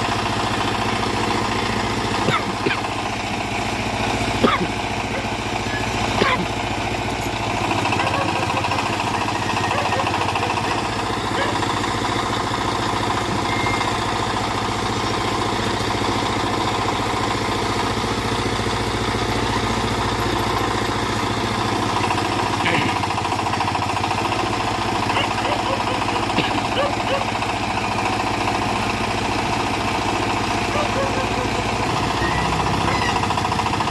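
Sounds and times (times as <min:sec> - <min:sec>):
backhoe engine running: 0:00.0 - 0:33.9.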